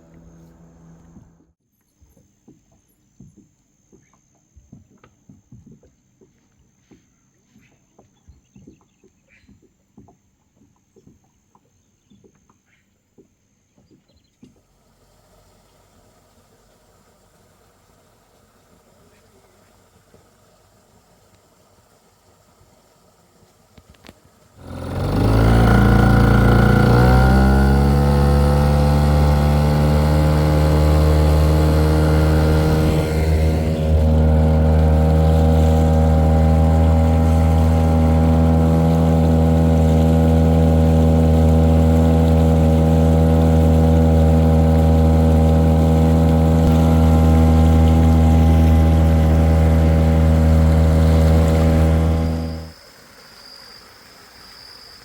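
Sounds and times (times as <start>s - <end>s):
outboard motor starting and running: 0.0s - 1.6s, 23.3s - 53.4s.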